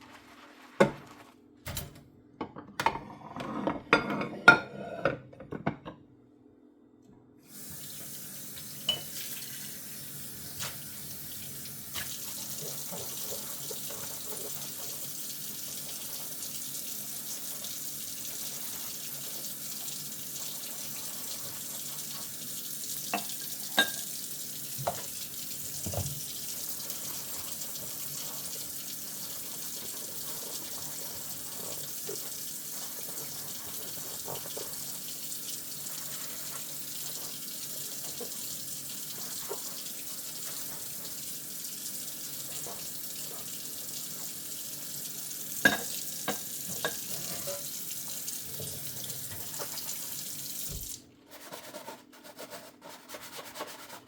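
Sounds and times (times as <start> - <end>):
dishes clinking: 2.5 - 6.0, 8.8 - 9.2, 23.1 - 24.2, 45.6 - 47.7
tap running into sink: 24.8 - 26.4, 48.5 - 51.0.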